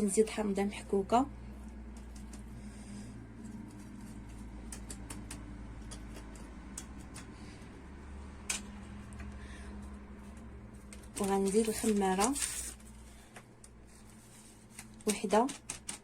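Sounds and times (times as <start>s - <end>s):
steady low hum: 0.0s - 16.0s
kitchen utensils clicking and tapping: 4.6s - 7.3s, 15.0s - 16.0s.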